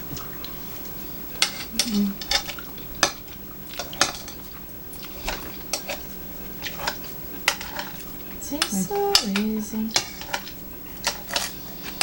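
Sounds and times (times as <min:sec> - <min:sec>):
utensils clinking against dishes: 0:01.4 - 0:03.2, 0:03.8 - 0:04.4, 0:05.2 - 0:12.0.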